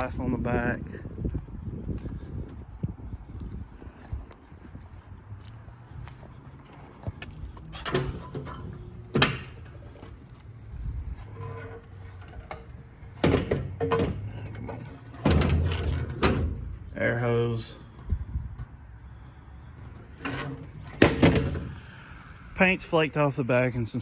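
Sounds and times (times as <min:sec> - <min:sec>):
metal clunks and rattles: 0:07.6 - 0:10.4, 0:11.0 - 0:17.0, 0:19.8 - 0:21.9.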